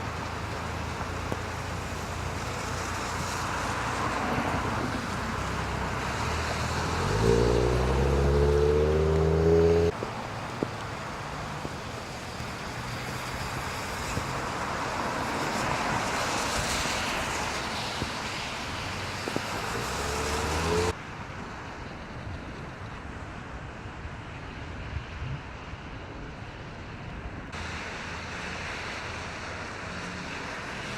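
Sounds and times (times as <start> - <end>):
rain: 0.0 - 30.9
traffic on wet roads: 0.0 - 30.9
vehicle engine running: 5.4 - 9.9.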